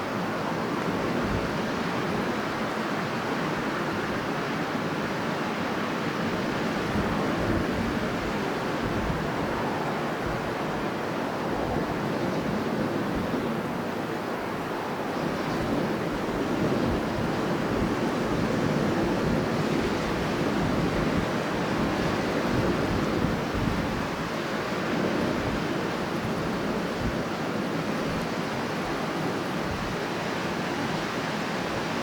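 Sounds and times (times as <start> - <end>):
strong wind blowing: 0.0 - 32.0.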